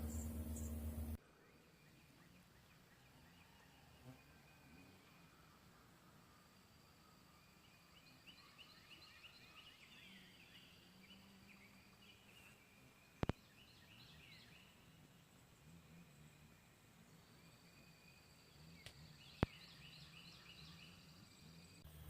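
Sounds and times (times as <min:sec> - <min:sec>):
birds chirping: 0:00.0 - 0:03.6, 0:06.7 - 0:21.8.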